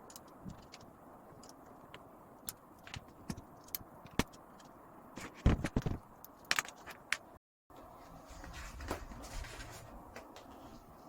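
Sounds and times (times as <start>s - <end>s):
small plastic parts clicking: 0.0s - 7.3s.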